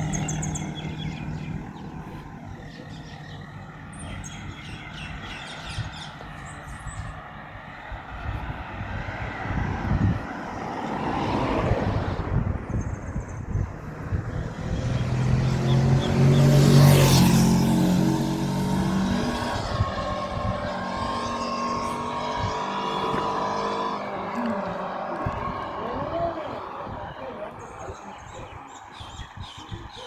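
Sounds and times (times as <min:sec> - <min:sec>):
vehicle passing by: 0:00.0 - 0:30.0.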